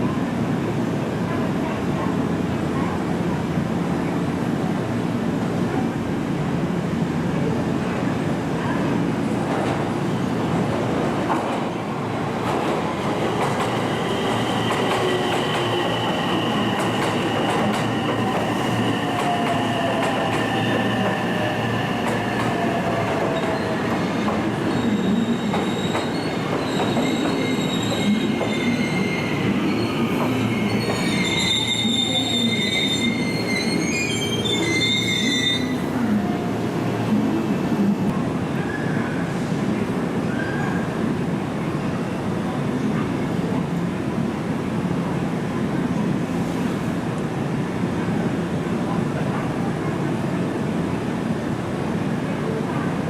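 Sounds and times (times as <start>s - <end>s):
train wheels squealing: 24.6s - 35.8s.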